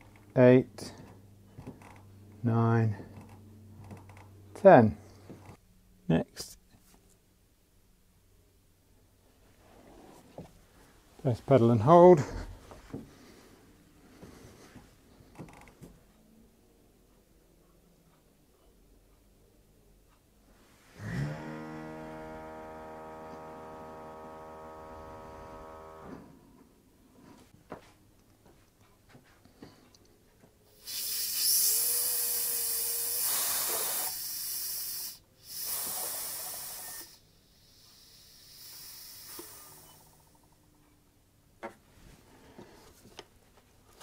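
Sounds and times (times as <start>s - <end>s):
pump motor whine: 21.0s - 26.3s
loud hissing: 30.8s - 40.3s.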